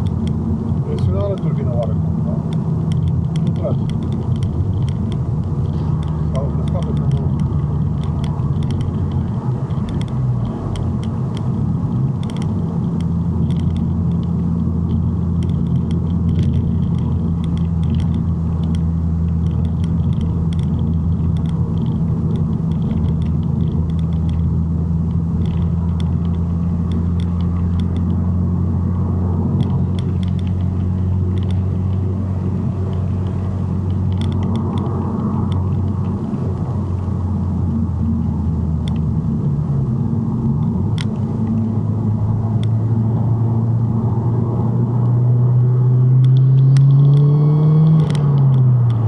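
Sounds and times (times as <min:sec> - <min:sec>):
car engine droning while driving: 0:00.0 - 0:49.0
light clicks: 0:02.5 - 0:24.5, 0:25.1 - 0:28.2, 0:29.6 - 0:32.1, 0:32.8 - 0:37.2, 0:38.8 - 0:39.1.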